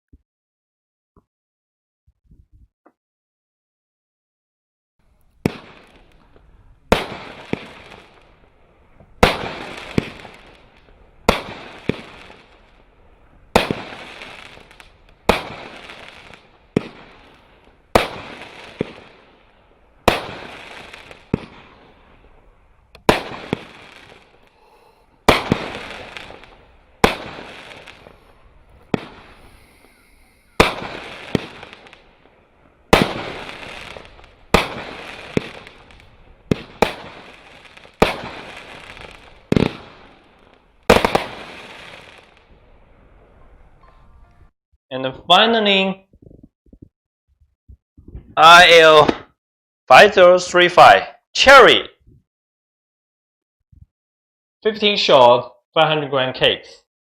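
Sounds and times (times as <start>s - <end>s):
firework crackling: 5.1s - 43.3s
firework shots banging: 5.4s - 8.2s, 9.0s - 12.4s, 13.5s - 19.4s, 20.0s - 22.3s, 22.9s - 24.5s, 25.1s - 42.4s.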